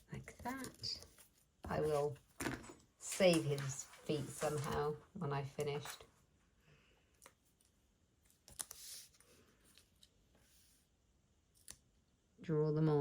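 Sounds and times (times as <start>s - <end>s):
card pieces rustling: 0.4s - 5.0s.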